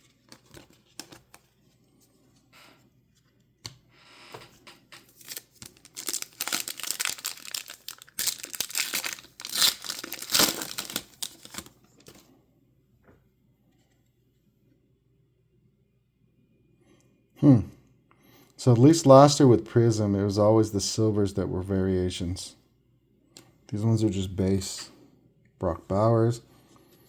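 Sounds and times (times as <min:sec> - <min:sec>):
foil wrapper tearing and crinkling: 0:05.1 - 0:12.2.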